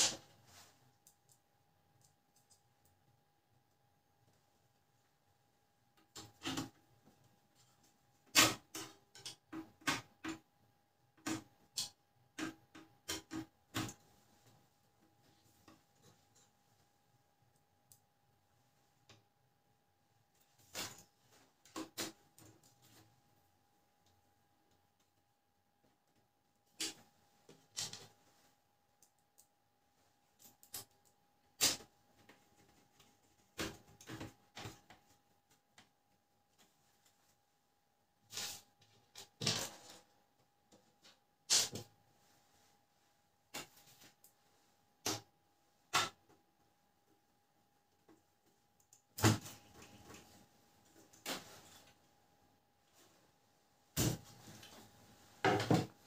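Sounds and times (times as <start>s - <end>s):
plastic parts clicking and knocking: 8.2s - 10.5s, 11.2s - 14.1s.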